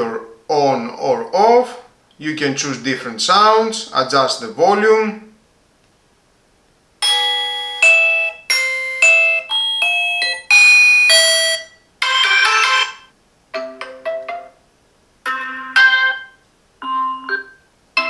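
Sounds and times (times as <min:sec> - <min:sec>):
doorbell ding-dong chimes: 0:07.0 - 0:13.0.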